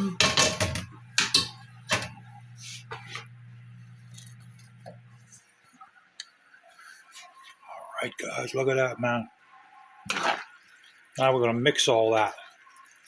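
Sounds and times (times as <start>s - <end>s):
dishes and utensils clattering: 0.1s - 2.2s.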